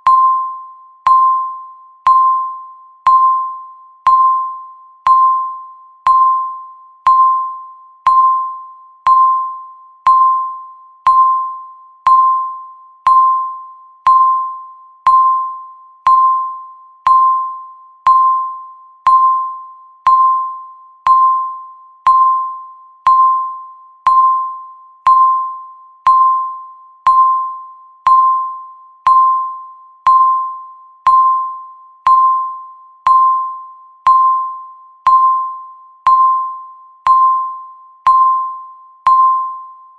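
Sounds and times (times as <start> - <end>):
timer ticking pings: 0.0 - 39.9.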